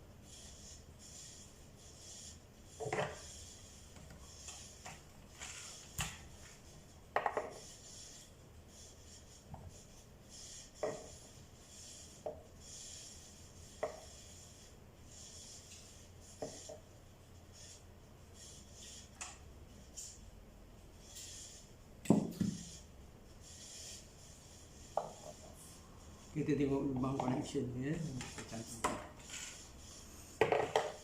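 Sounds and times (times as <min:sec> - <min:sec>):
plastic parts knocking and clicking: 0:30.4 - 0:31.0.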